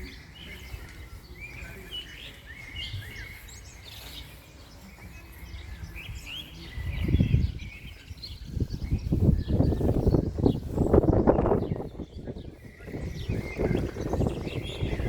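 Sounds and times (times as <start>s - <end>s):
small birds chirping: 0.0s - 15.0s
wind blowing on microphone: 5.5s - 15.0s.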